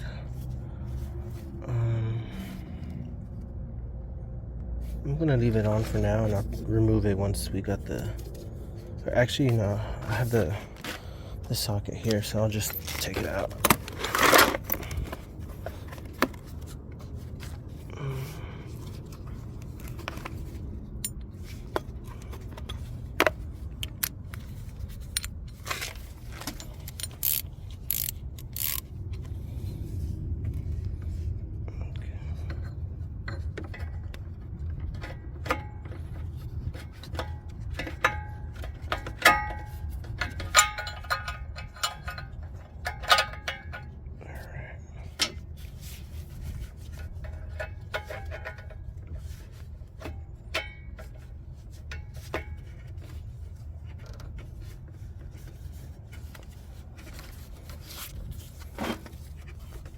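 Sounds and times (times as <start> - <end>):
metal tools clinking and scraping: 4.9 - 29.6, 32.2 - 59.9
socket ratchet clicking: 26.8 - 28.9.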